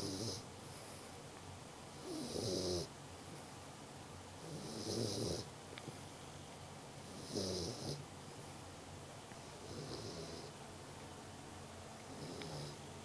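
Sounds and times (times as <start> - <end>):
puppy snoring: 0.0 - 1.1, 2.0 - 2.9, 4.4 - 5.5, 7.0 - 8.1, 9.4 - 10.6, 12.1 - 12.8.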